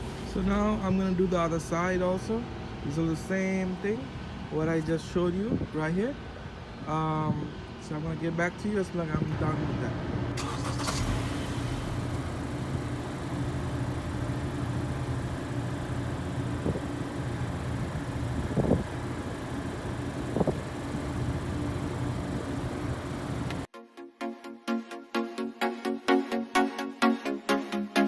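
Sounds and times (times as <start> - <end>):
car engine humming: 10.1 - 23.7.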